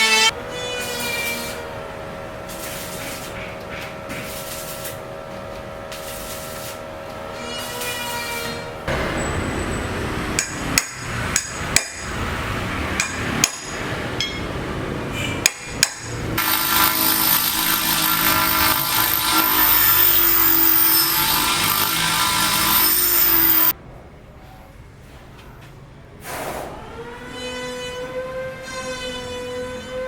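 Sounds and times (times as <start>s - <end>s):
construction background din: 0.0s - 30.0s
hammer strikes: 10.3s - 12.3s, 12.9s - 14.6s, 15.4s - 23.7s
power tool whining: 16.4s - 23.7s.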